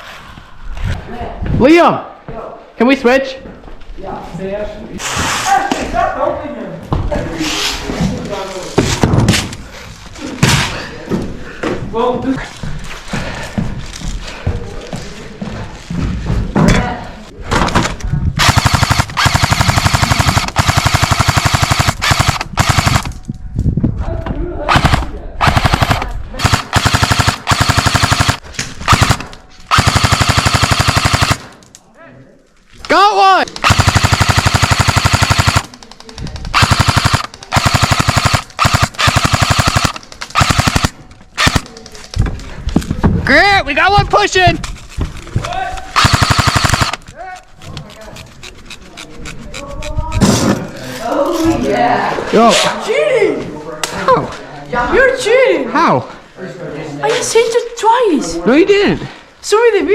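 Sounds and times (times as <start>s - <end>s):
airsoft gun firing rapid shots: 18.4s - 23.2s, 24.7s - 31.6s, 33.6s - 41.7s, 45.9s - 47.1s.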